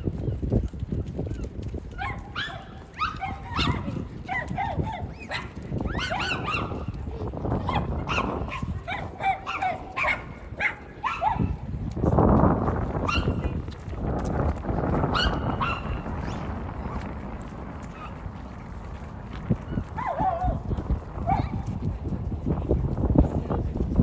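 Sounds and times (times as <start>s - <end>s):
low rumble of wind and water: 0.0s - 24.0s.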